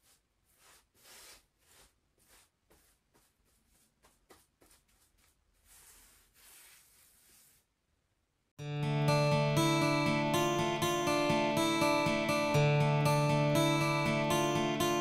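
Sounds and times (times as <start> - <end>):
paint brush strokes on stone: 0.0 - 7.7.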